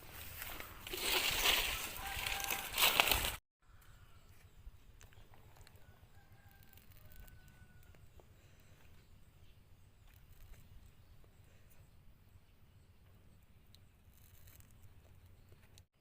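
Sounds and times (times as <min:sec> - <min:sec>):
distant rooster crowing: 0:01.7 - 0:03.4, 0:05.6 - 0:08.2.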